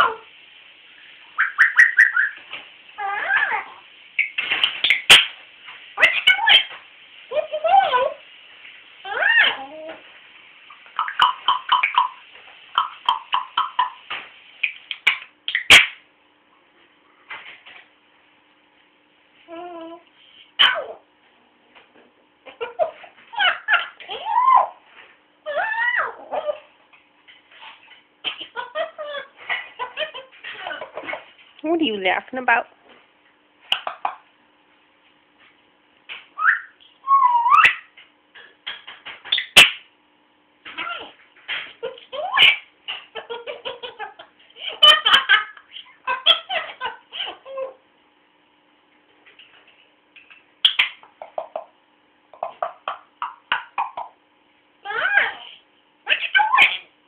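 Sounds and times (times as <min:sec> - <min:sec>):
pet animal chirping and calling: 0:01.4 - 0:02.4, 0:11.0 - 0:12.2, 0:12.8 - 0:14.0, 0:36.4 - 0:37.9, 0:54.9 - 0:56.9
pet animal chirping calls: 0:01.4 - 0:02.4.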